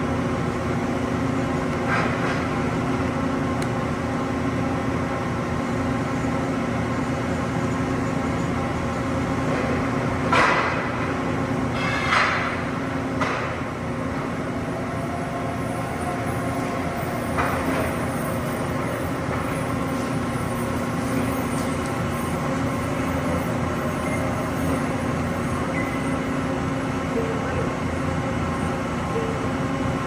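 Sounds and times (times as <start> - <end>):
machinery humming: 2.6 - 30.0.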